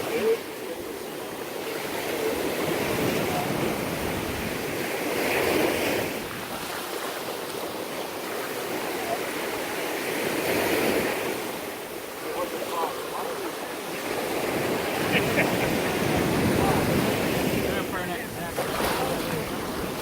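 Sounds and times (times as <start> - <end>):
surf washing onto shore: 0.0 - 20.0
wind buffeting microphone: 1.8 - 6.8, 14.0 - 20.0.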